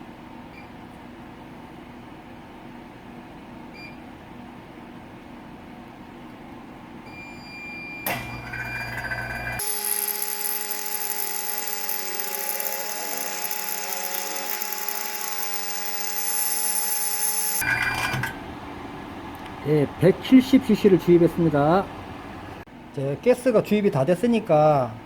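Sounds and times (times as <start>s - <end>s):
pump mechanical whine: 7.1s - 19.0s.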